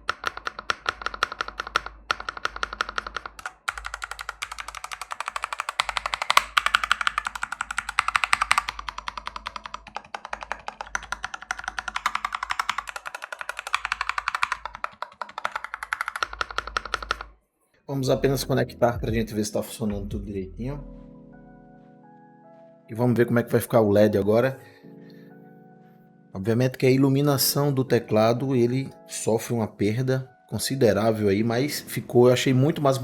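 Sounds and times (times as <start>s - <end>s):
typing on mechanical keyboard: 0.0s - 17.3s.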